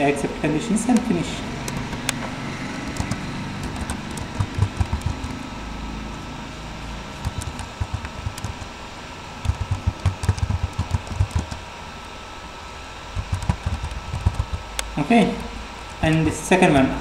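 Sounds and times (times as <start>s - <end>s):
faint electrical hum: 0.0s - 17.0s
dull irregular thumps: 2.9s - 5.4s, 7.2s - 8.7s, 9.4s - 11.6s, 13.2s - 14.7s.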